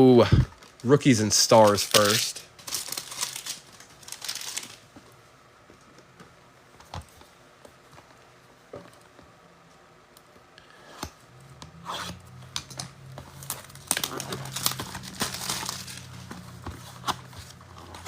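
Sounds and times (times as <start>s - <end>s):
plastic wrapper crinkling: 0.5s - 4.9s, 13.3s - 18.0s.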